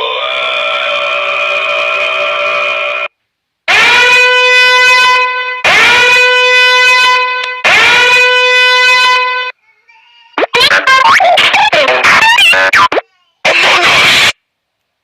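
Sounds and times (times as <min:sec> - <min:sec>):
horn blasts: 0:03.7 - 0:09.6.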